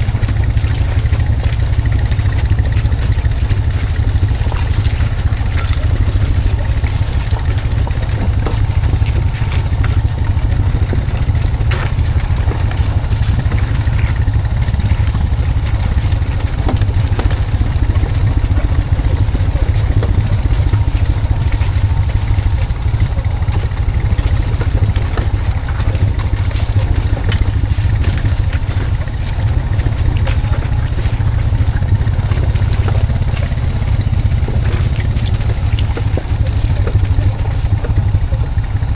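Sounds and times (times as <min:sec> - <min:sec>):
atv engine running with clatter: 0:00.0 - 0:38.9.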